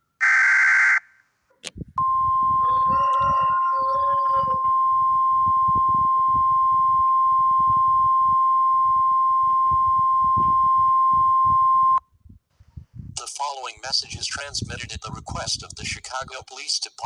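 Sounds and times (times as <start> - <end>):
high-pitched sine tone: 2.0 - 12.0.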